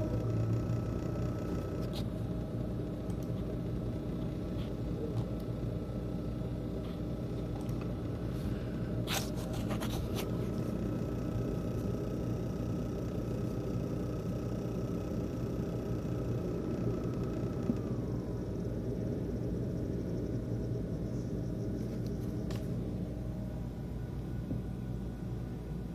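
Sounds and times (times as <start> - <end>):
faint fan whine: 0.0 - 25.9
laptop fan buzzing rattle: 0.0 - 25.9.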